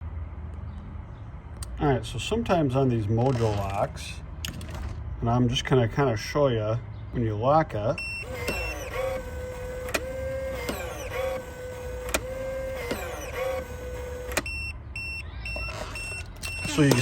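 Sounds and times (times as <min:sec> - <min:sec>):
lock motor whirring: 0:08.0 - 0:17.0.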